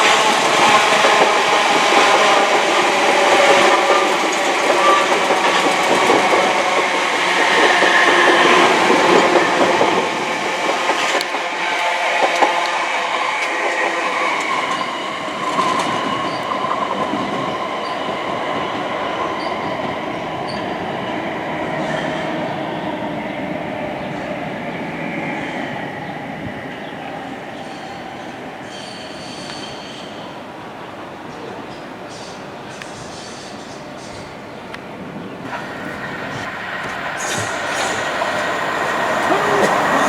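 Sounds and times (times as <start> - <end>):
train wheels clicking over rail joints: 0.0 - 17.6, 35.5 - 40.0
electric train passing on tracks: 0.0 - 40.0.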